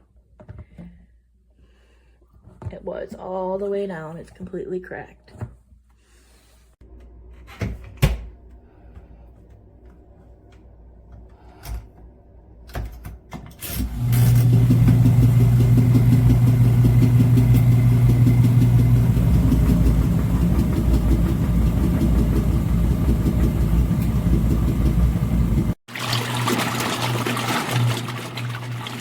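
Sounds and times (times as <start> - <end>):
washing machine clicking: 12.7 - 29.0
washing machine motor humming: 13.6 - 29.0.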